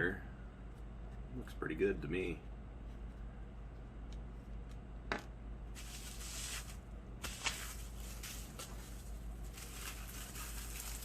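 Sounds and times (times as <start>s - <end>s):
bubble wrap crinkling: 5.8s - 11.0s.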